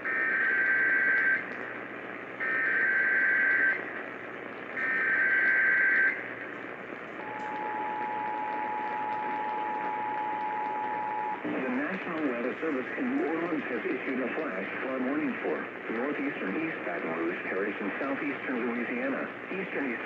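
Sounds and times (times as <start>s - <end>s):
radio static hiss: 0.0s - 20.0s
two-tone attention signal: 7.2s - 11.4s.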